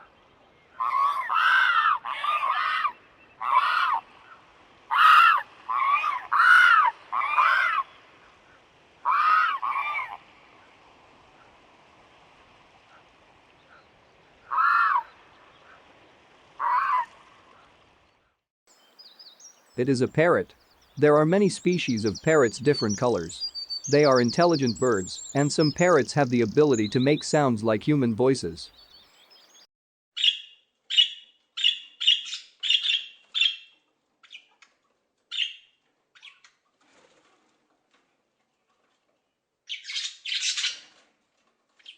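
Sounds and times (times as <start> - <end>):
pelican calling: 0.8 - 4.0, 4.9 - 7.8, 9.1 - 10.1, 21.0 - 28.6.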